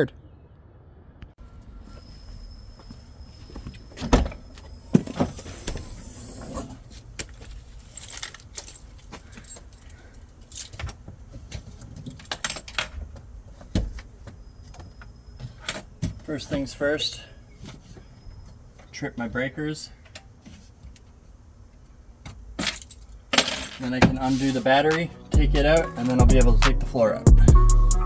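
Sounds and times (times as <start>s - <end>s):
metallic jingling and clinking: 7.4s - 10.9s, 22.6s - 24.3s.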